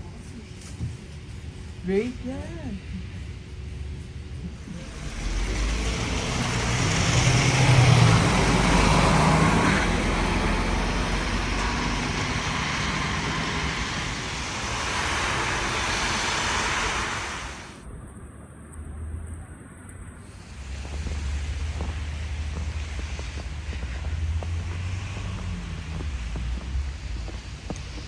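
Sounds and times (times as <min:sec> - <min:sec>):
steady road noise: 0:00.0 - 0:28.0
vehicle passing: 0:03.9 - 0:17.8, 0:20.1 - 0:28.0.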